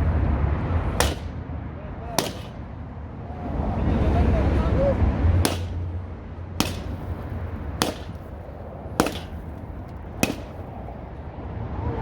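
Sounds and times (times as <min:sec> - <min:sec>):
sharp cracks: 0:00.9 - 0:01.4, 0:02.2 - 0:02.8, 0:05.4 - 0:11.0.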